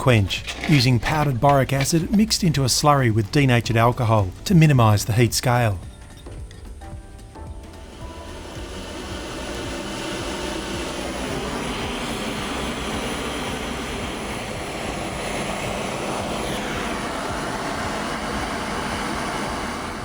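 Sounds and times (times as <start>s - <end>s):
gas torch flame burning: 0.0s - 20.0s.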